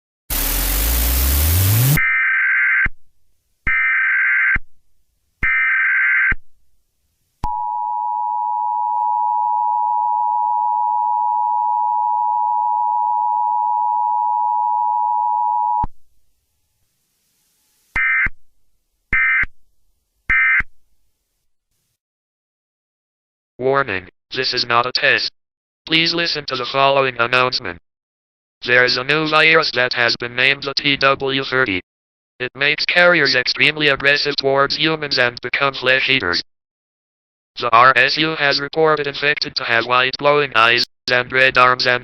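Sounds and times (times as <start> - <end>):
burst of static: 0.3 - 2.0
digital data bursts: 0.3 - 2.0.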